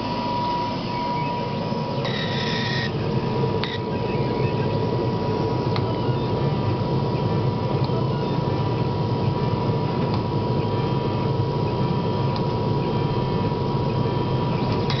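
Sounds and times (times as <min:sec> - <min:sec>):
thin high tone: 0:00.0 - 0:03.0
laser cutter low hum: 0:00.0 - 0:15.0.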